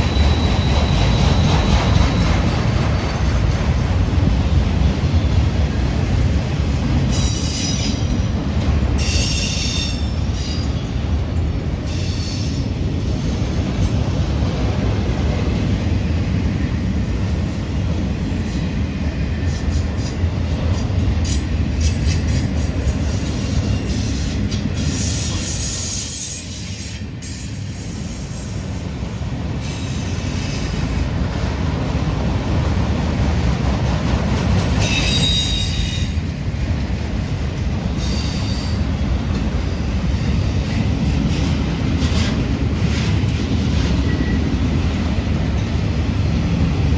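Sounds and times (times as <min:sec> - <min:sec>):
wheels rumbling on rail: 0:00.0 - 0:46.9
high-pitched wheel squeal: 0:34.8 - 0:36.2.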